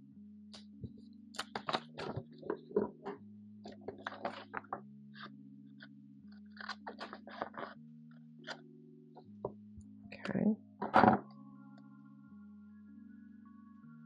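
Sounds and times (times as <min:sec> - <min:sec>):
paper crinkling: 0:01.4 - 0:02.7, 0:03.7 - 0:04.8, 0:06.4 - 0:07.8.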